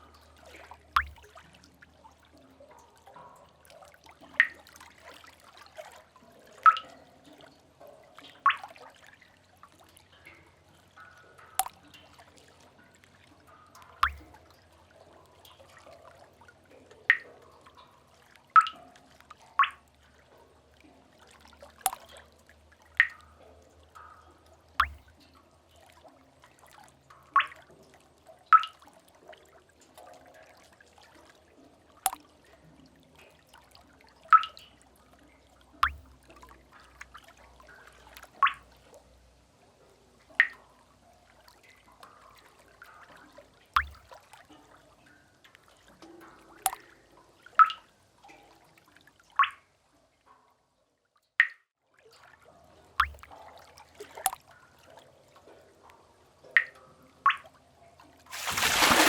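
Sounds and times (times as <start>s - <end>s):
water drops plinking into pool: 0.0s - 31.3s, 31.9s - 32.6s, 33.2s - 38.9s, 40.2s - 40.7s, 43.7s - 45.6s, 46.2s - 48.5s, 49.4s - 49.7s, 51.3s - 51.7s, 53.0s - 54.6s, 55.8s - 57.6s, 58.3s - 59.0s.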